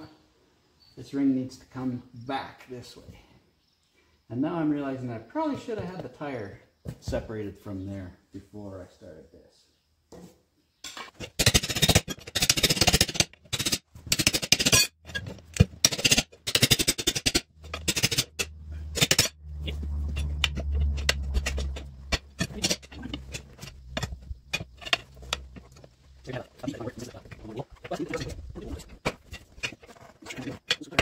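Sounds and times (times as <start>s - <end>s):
metal scraping and clinking: 10.9s - 31.0s
low hum: 17.6s - 26.2s.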